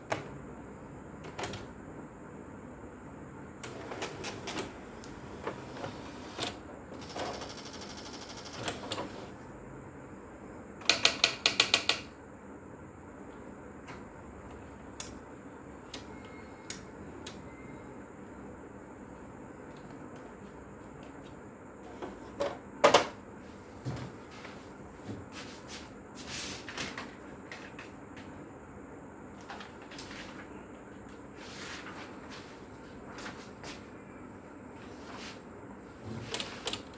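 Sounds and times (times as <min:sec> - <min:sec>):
electric typewriter clicks: 0:01.3 - 0:01.7, 0:03.6 - 0:09.2, 0:10.8 - 0:12.1, 0:36.3 - 0:36.9
typewriter rapid rattle: 0:07.0 - 0:09.0.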